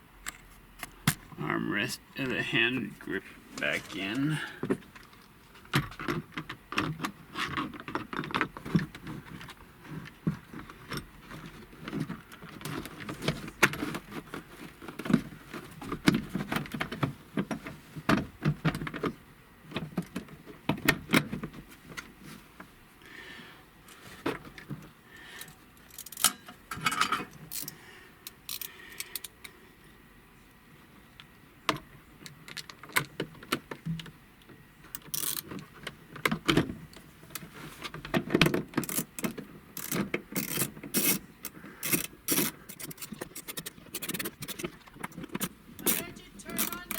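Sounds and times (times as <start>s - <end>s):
plastic trim parts clicking and rattling: 25.4s - 29.4s, 35.0s - 35.6s, 38.1s - 46.9s.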